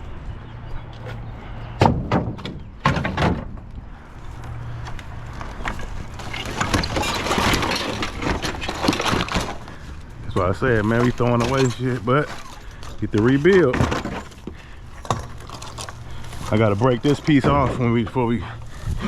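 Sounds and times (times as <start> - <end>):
wooden boards knocking: 1.8 - 3.7
debris clattering and scraping: 1.8 - 19.0.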